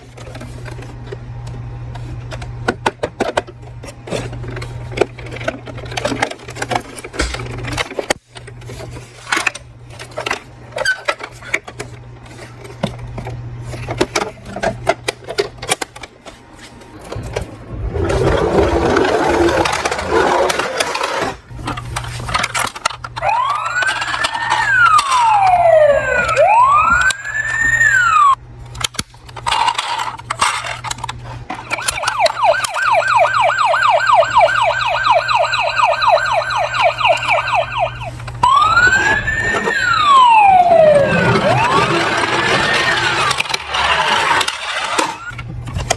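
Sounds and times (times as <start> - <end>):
electronic toy siren: 23.2 - 28.4, 31.6 - 45.4.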